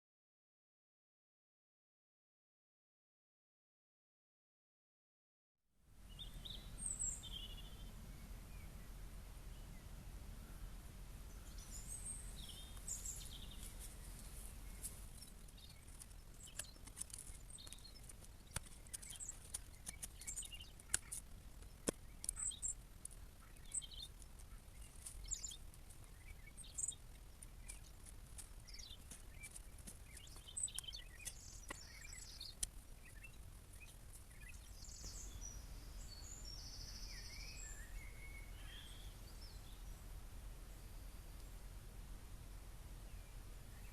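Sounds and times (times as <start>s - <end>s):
birds chirping: 6.0s - 43.9s
fire popping and crackling: 14.8s - 34.5s.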